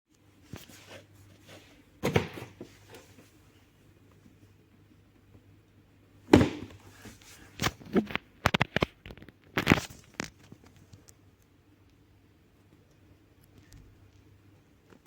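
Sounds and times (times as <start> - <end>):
box and packaging handled: 0.5 - 3.3.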